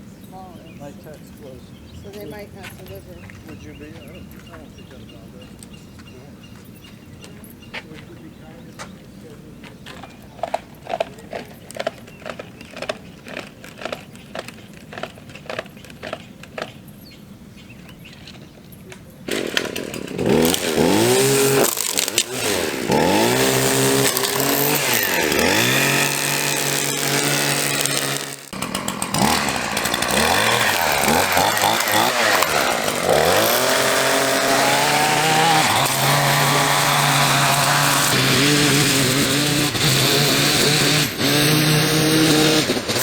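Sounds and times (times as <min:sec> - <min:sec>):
string trimmer engine revving: 0:10.0 - 0:16.2, 0:19.2 - 0:43.0
regular clicking: 0:18.9 - 0:43.0.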